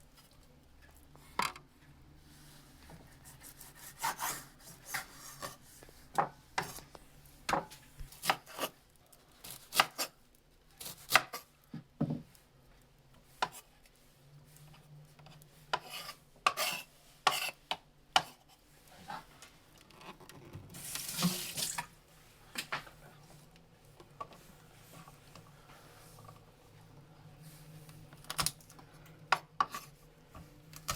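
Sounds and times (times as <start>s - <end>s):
knife and utensils on a board: 2.8s - 8.8s, 9.4s - 10.2s, 10.8s - 12.4s, 13.2s - 13.7s, 15.2s - 19.3s, 29.3s - 30.0s
running water: 20.7s - 22.0s.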